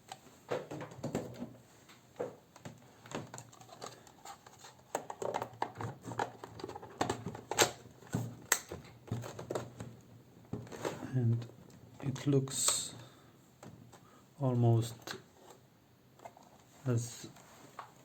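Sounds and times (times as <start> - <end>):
plastic snaps: 8.4 - 9.9.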